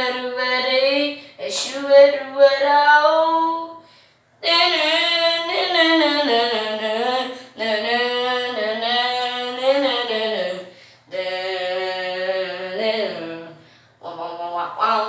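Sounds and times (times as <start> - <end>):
wordless singing: 4.4 - 15.0.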